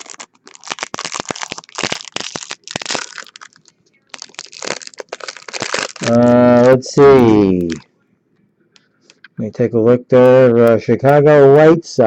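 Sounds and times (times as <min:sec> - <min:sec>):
foil wrapper crinkling: 0:00.0 - 0:07.8.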